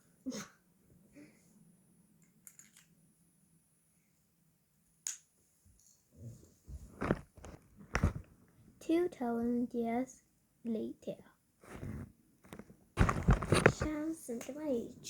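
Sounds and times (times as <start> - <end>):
pen and paper clicks: 2.4 - 2.9, 13.0 - 14.0.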